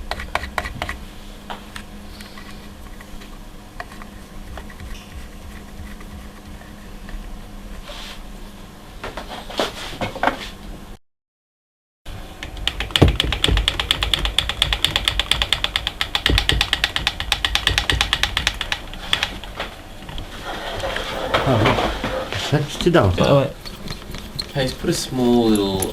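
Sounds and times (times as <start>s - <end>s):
low steady hum: 0.0s - 9.5s, 12.1s - 25.9s
milling machine rapid clicks: 12.5s - 19.3s, 23.5s - 25.9s.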